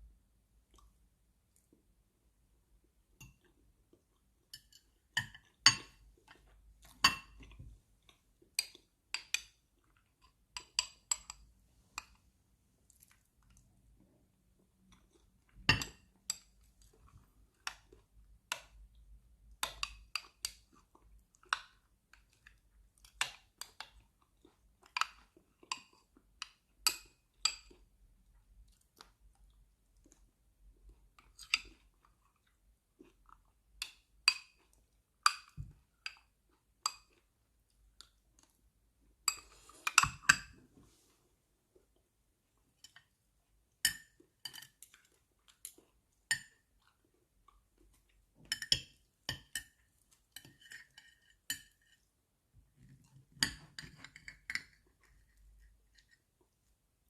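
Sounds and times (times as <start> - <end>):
chewing: 12.8 - 13.8, 44.2 - 48.2.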